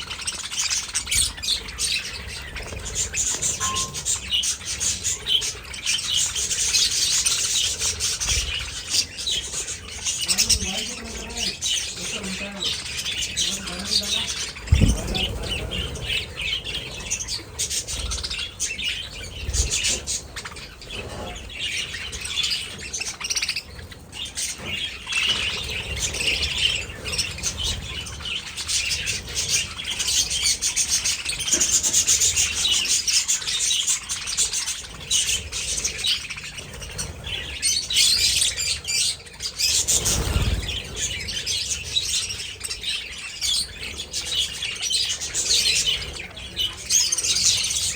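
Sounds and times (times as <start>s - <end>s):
budgerigars chirping and chattering: 0.0s - 47.9s
low thumps: 14.7s - 15.5s.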